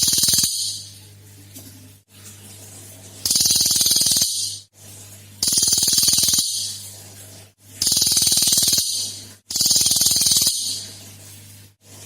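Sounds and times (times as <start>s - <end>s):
songbird rattling call: 0.0s - 0.8s, 3.3s - 4.6s, 5.4s - 6.8s, 7.8s - 10.8s.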